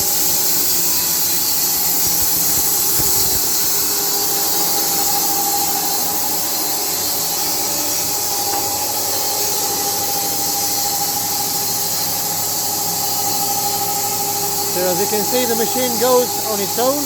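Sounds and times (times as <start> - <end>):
machine whine: 0.0 - 17.0
bandsaw blade hissing through wood: 14.7 - 17.0.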